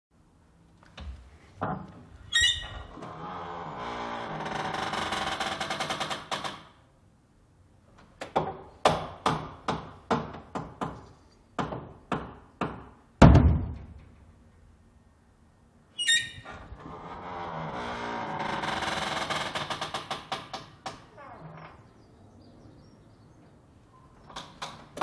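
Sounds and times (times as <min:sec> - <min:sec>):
door hinge creaking: 0:01.0 - 0:06.8, 0:16.0 - 0:22.0, 0:24.0 - 0:25.0.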